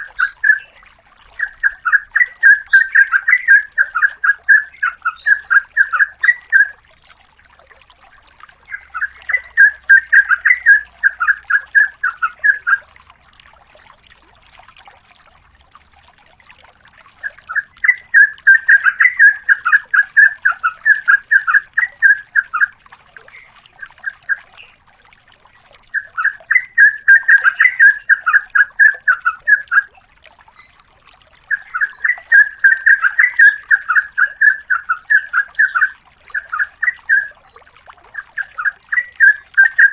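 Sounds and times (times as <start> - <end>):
bird singing chattering notes: 0.0 - 0.8, 25.9 - 37.6, 38.2 - 39.9.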